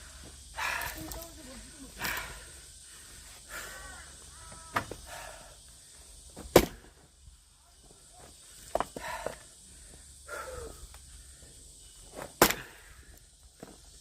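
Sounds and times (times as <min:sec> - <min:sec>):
axe splitting firewood: 0:06.5 - 0:06.9, 0:12.2 - 0:12.8.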